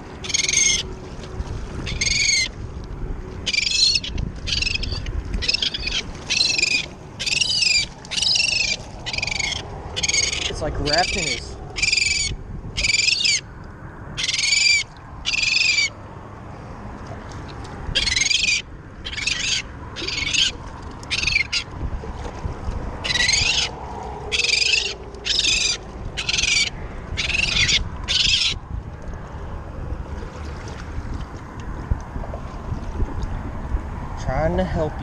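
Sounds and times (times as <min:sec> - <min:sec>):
seagull harsh distress calls: 0:00.2 - 0:00.9, 0:01.9 - 0:02.5, 0:03.5 - 0:13.5, 0:14.2 - 0:16.0, 0:18.0 - 0:21.7, 0:23.0 - 0:28.6.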